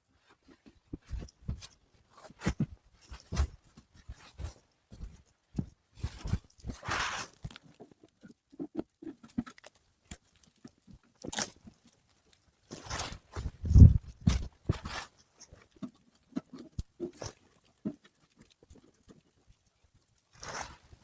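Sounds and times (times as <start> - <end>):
crunches and knocks: 0.5 - 11.7, 12.7 - 15.2.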